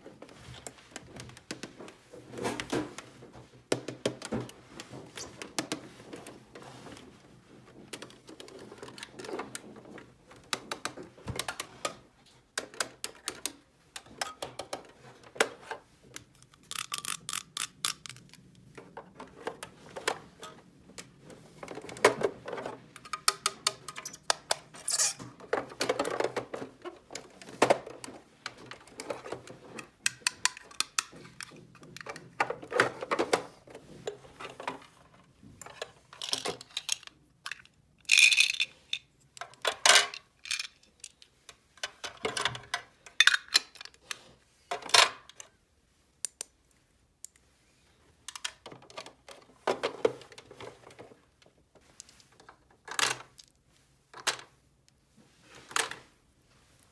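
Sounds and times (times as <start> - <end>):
plastic toy pieces clattering: 16.2 - 18.5, 30.0 - 32.2, 35.7 - 44.0.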